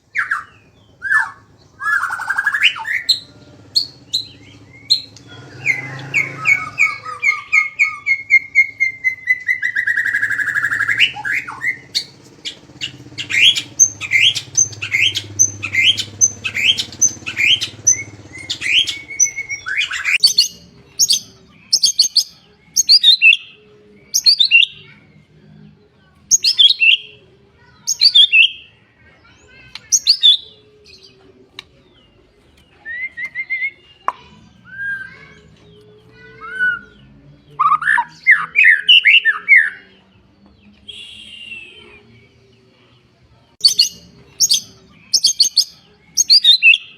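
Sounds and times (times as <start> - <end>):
sharp bird chirps: 40.8 - 42.2
songbird whistled notes: 40.8 - 42.2.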